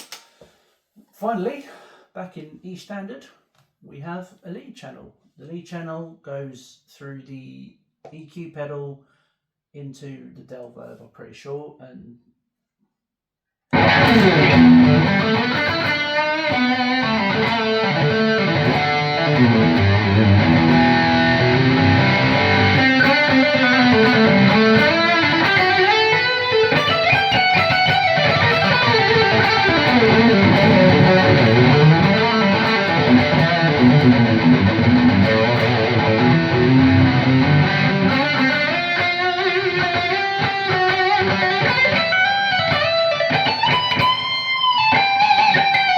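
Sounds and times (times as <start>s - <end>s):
electric guitar riffs: 13.7s - 45.9s.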